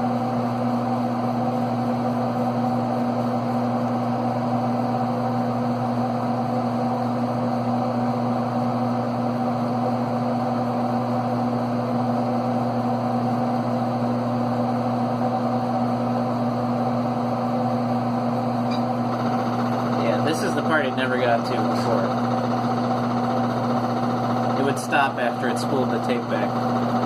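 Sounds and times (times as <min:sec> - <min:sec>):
computer fans humming: 0:15.9 - 0:27.0.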